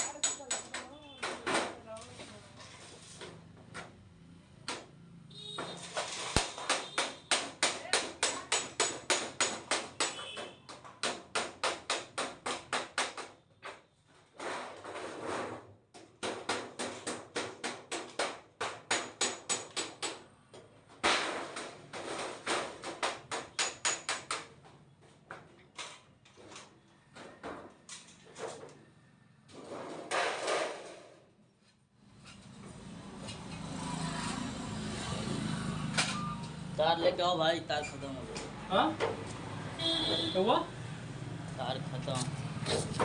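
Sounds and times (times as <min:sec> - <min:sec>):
rapid hammer strikes: 0:06.4 - 0:10.2, 0:10.8 - 0:13.4, 0:15.9 - 0:20.3, 0:21.0 - 0:24.6
rough scraping: 0:42.0 - 0:43.0.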